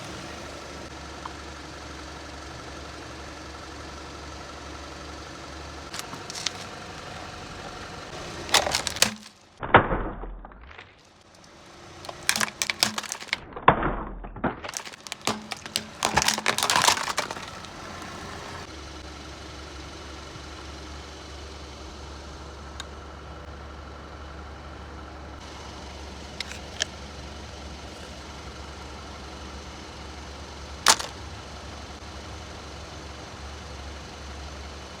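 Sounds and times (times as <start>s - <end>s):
car engine idling: 0.0s - 9.6s, 11.0s - 13.4s, 14.6s - 35.0s
objects cracking under car tyre: 5.9s - 18.7s, 26.3s - 27.0s, 30.8s - 31.2s.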